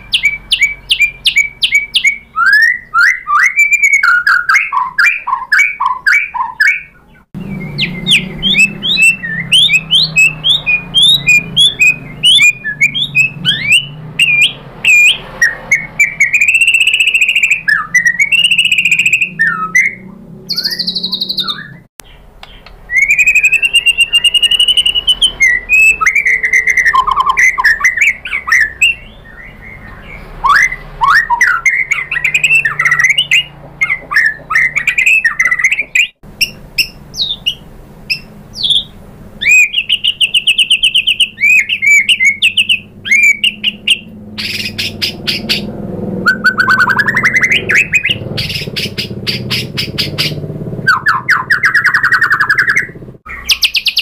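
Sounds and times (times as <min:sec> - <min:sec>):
bird singing whistles and rattles: 0:00.0 - 0:54.0.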